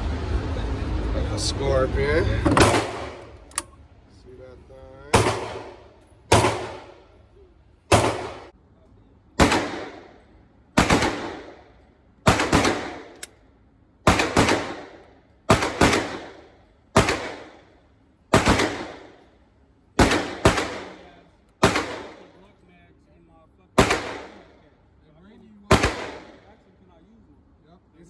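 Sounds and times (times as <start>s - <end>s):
gunshots echoing: 2.5s - 3.4s, 5.1s - 7.2s, 7.9s - 8.5s, 9.4s - 10.2s, 10.8s - 11.7s, 12.3s - 13.3s, 14.1s - 19.2s, 20.0s - 22.4s, 23.8s - 24.6s, 25.7s - 26.5s.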